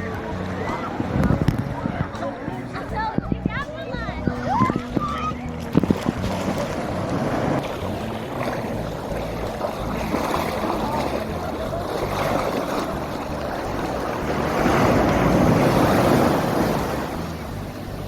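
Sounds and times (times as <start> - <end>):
wind buffeting microphone: 0.0 - 18.0
surf washing onto beach: 4.4 - 18.0.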